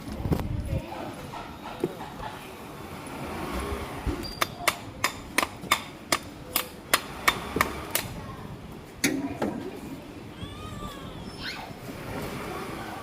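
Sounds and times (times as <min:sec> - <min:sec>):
hand tool tapping on metal: 0:04.2 - 0:08.1.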